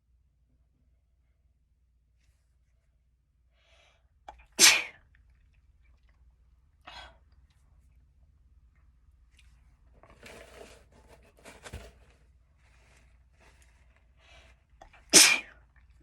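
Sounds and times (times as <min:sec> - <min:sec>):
person sneezing: 0:04.6 - 0:05.0, 0:15.1 - 0:15.5.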